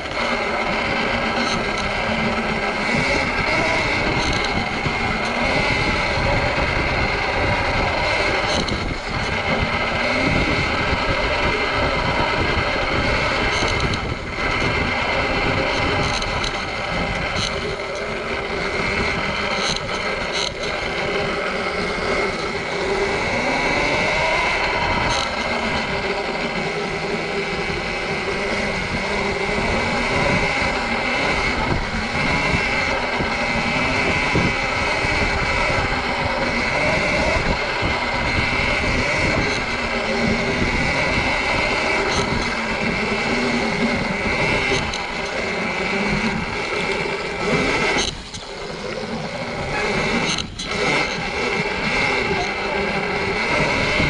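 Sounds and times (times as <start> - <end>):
electric motor whine: 0.0 - 54.0
wind on microphone: 0.0 - 54.0.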